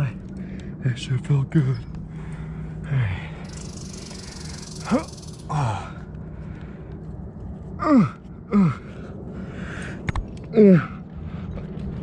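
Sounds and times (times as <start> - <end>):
climber grunting and exhaling: 4.8 - 6.1, 7.8 - 11.8.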